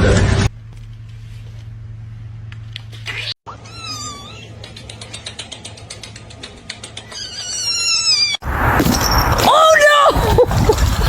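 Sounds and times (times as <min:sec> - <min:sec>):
cat meowing: 0:03.5 - 0:04.6, 0:07.1 - 0:08.4
faint rapid clicking: 0:04.6 - 0:07.2.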